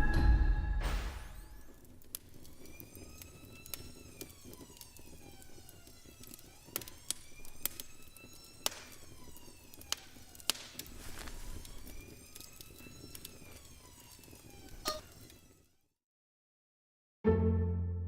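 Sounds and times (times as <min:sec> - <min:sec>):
faint siren wailing: 0:01.4 - 0:15.7
sharp clicks and crackles: 0:01.7 - 0:15.4.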